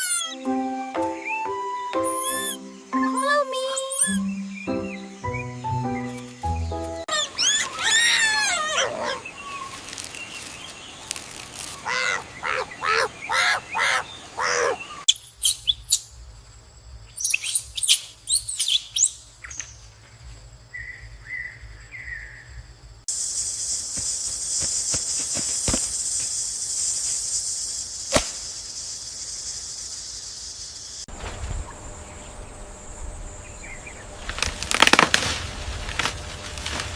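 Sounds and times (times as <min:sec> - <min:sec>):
animal calls: 0:00.0 - 0:00.5, 0:02.0 - 0:04.2, 0:07.1 - 0:09.8, 0:11.7 - 0:15.5
bird chirps: 0:00.0 - 0:11.1, 0:11.7 - 0:16.1, 0:17.1 - 0:19.9
steady high hiss: 0:00.0 - 0:36.9.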